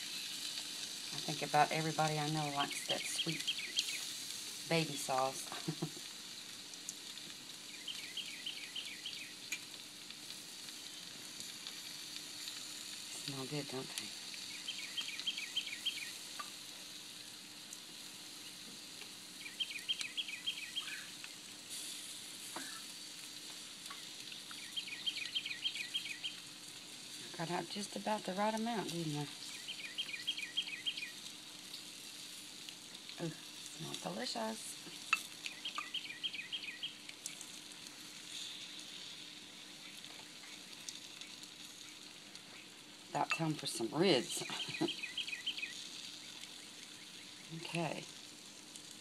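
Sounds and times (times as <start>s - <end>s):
meat sizzling on a grill: 0.0s - 49.0s
songbird chirping: 1.2s - 5.9s, 7.6s - 9.6s, 13.1s - 16.6s, 19.4s - 21.4s, 23.9s - 26.5s, 27.4s - 31.3s, 33.2s - 37.5s, 38.3s - 48.1s
bird singing falling notes: 35.1s - 37.0s.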